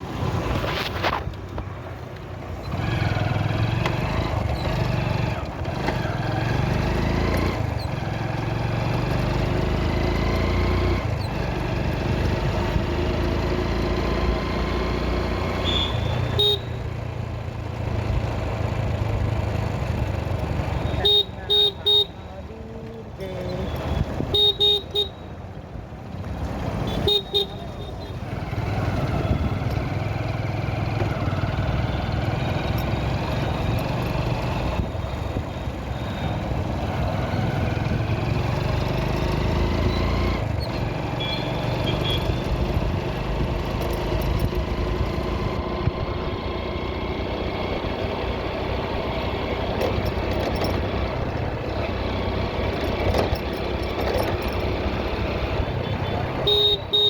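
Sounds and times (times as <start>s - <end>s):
engine tyre and wind noise: 0.0s - 57.0s
road traffic: 0.0s - 57.0s
vehicle horn honks: 15.6s - 16.8s, 20.8s - 22.2s, 23.9s - 25.2s, 26.8s - 28.2s, 41.2s - 42.4s, 55.8s - 57.0s.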